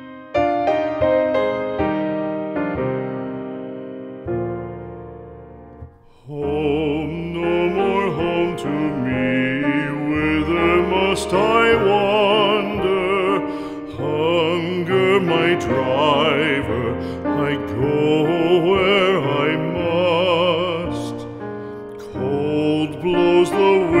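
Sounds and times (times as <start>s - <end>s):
piano chord: 0.0s - 24.0s
operatic singing with piano: 5.9s - 24.0s.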